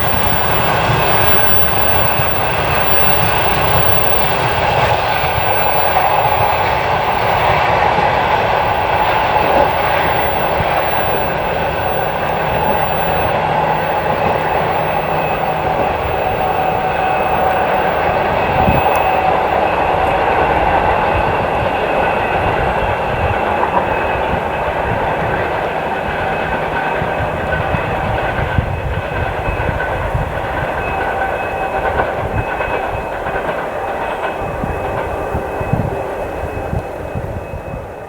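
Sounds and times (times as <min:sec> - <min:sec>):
turbocharger whistle: 0:00.0 - 0:06.6
train coaches clattering over rail joints: 0:00.0 - 0:38.0.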